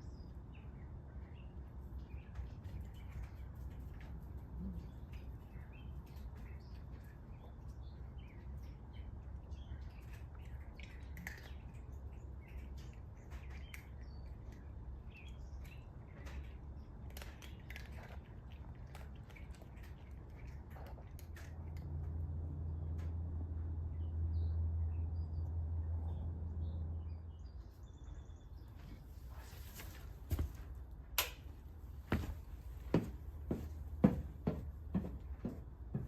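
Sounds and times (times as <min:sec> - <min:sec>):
birds chirping: 0:00.0 - 0:20.8, 0:23.8 - 0:30.9.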